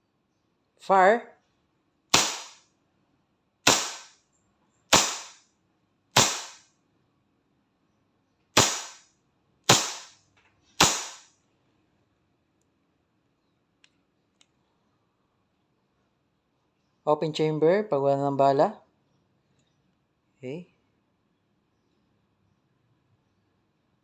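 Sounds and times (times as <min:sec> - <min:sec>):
airsoft pistol shots: 0:02.1 - 0:02.6, 0:03.7 - 0:04.2, 0:04.9 - 0:05.4, 0:06.2 - 0:06.7, 0:08.6 - 0:09.1, 0:09.7 - 0:10.2, 0:10.8 - 0:11.3.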